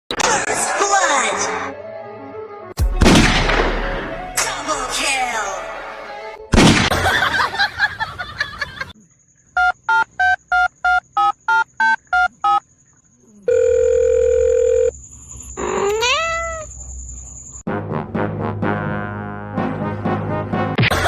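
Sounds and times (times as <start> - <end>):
keypad beeps: 9.6 - 12.6
steady telephone tone: 13.5 - 14.9.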